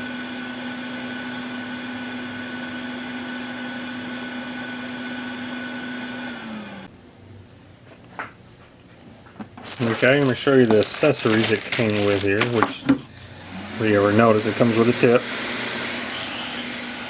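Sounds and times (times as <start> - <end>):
hot air gun blower fan humming: 9.6 - 17.0.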